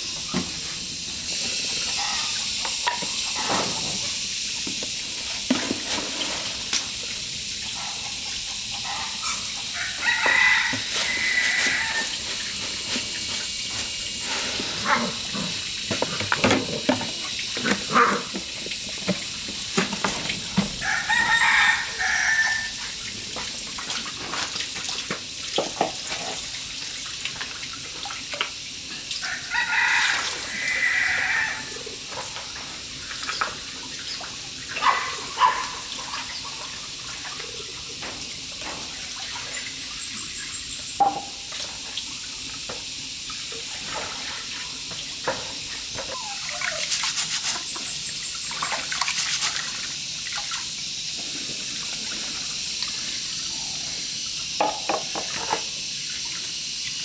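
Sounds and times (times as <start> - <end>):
water running: 0.0 - 57.0
chicken-like call: 8.8 - 12.5, 20.8 - 23.0, 29.2 - 32.0.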